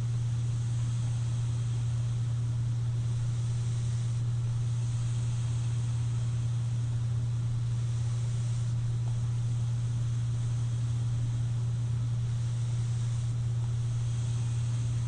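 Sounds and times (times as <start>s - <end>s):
cpap machine humming: 0.0s - 15.0s
air hissing: 3.1s - 6.6s, 7.6s - 11.3s, 12.2s - 15.0s.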